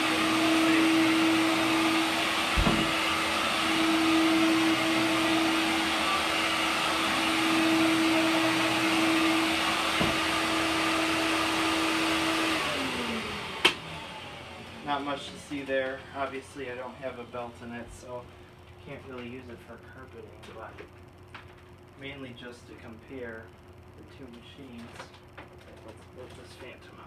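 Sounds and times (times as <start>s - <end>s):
vacuum cleaner motor running: 0.0s - 18.2s.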